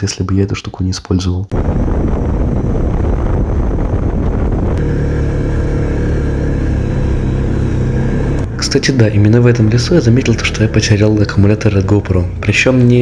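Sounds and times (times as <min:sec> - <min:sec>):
wind rushing over microphone: 0:01.5 - 0:04.8
atv engine running: 0:03.7 - 0:13.0.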